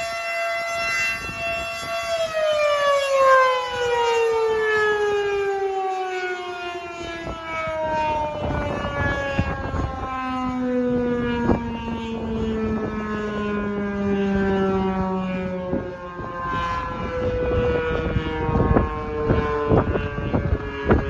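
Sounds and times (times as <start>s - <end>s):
distant sirens: 0.0s - 21.0s
warning siren wailing: 0.0s - 21.0s.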